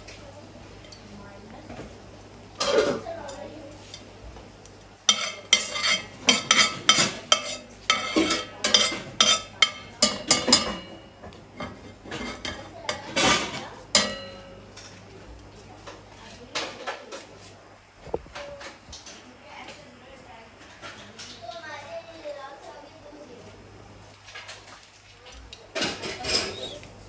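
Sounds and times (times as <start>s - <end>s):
metal spoon clinking on pot: 5.1s - 11.0s, 11.6s - 14.6s.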